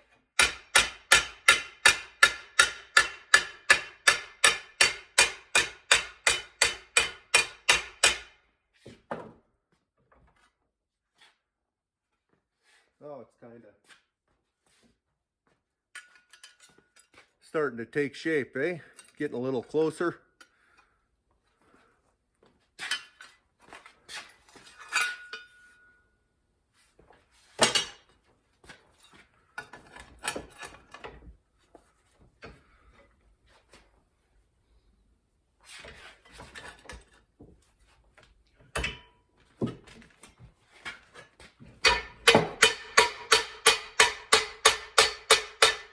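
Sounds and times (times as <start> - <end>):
hammer striking sheet steel: 0.4 - 8.4, 41.8 - 45.9
metal clinks and knocks: 24.8 - 26.0.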